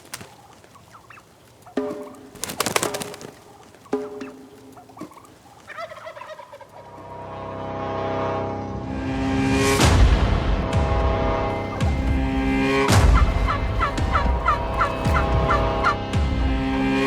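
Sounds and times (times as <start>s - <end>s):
turkey gobbling: 0.0s - 6.9s, 11.5s - 17.0s
music: 7.0s - 17.0s.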